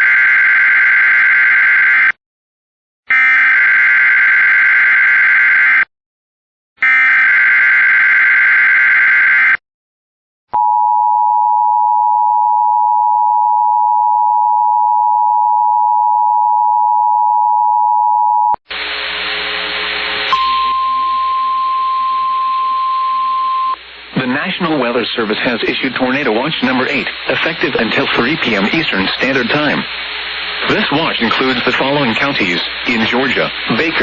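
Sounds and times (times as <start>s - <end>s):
two-tone attention signal: 20.3s - 23.8s.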